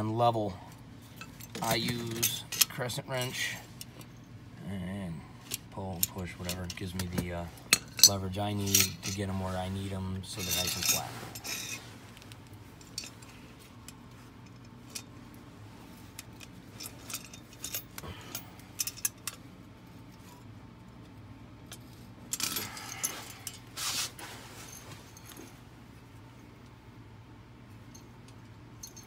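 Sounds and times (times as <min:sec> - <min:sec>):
metal trap clinking and rattling: 0:01.1 - 0:04.4, 0:05.5 - 0:09.4, 0:10.2 - 0:11.9, 0:16.1 - 0:19.4, 0:21.7 - 0:23.8, 0:27.9 - 0:29.0.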